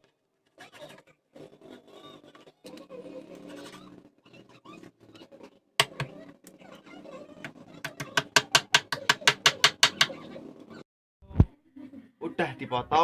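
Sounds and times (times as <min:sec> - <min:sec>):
knife chopping on a cutting board: 0:07.8 - 0:10.2.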